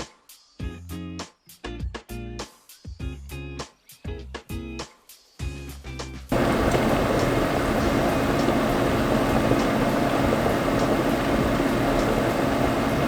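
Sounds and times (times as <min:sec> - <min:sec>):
pot of broth boiling: 0:06.3 - 0:13.0.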